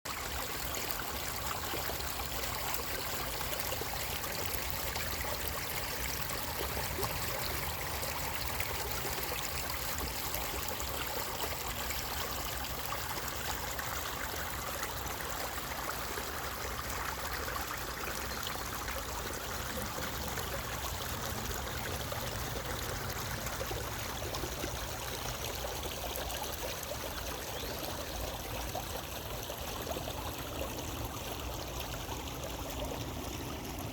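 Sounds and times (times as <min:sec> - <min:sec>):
running water: 0:00.1 - 0:33.9.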